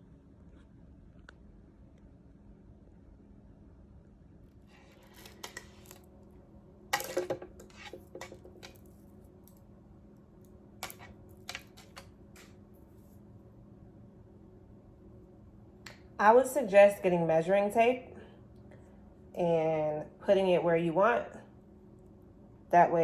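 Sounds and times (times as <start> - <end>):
beads clicking and rustling: 7.0 - 9.6.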